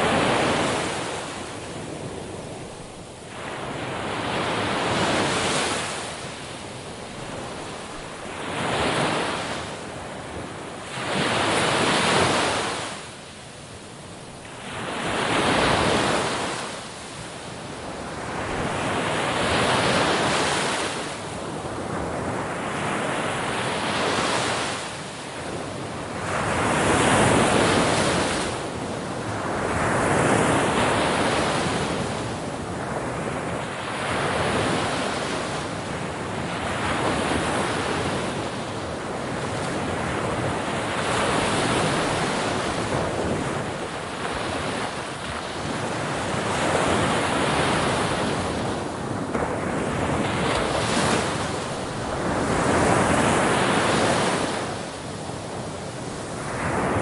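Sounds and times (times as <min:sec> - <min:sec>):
ocean waves breaking on shore: 0:00.0 - 0:57.0.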